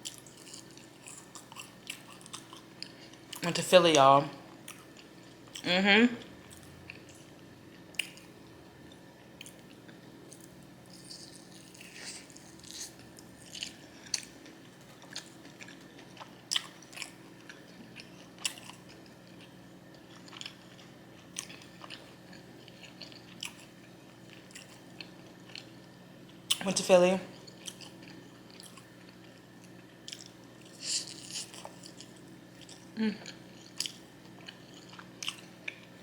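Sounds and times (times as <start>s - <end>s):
person chewing and crunching food: 0.0s - 3.5s, 4.5s - 26.6s, 27.4s - 36.0s
faint steady hum: 0.0s - 36.0s.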